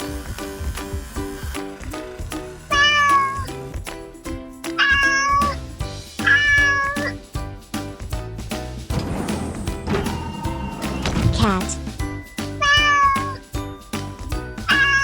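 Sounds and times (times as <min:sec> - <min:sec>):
background music with a beat: 0:00.0 - 0:15.0
cat meowing: 0:12.6 - 0:13.4, 0:14.7 - 0:15.0.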